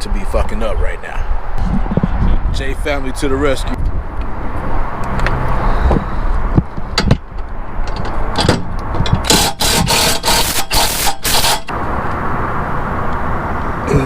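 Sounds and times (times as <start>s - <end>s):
drill tightening bolt: 7.9s - 11.7s.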